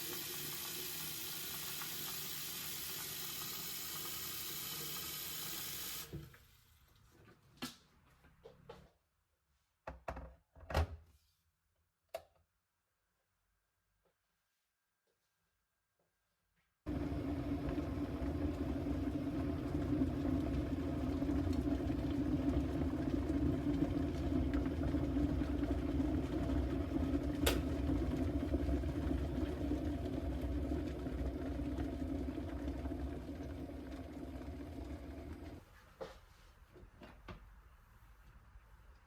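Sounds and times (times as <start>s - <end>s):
appliance humming: 0.0s - 6.3s, 16.9s - 35.6s.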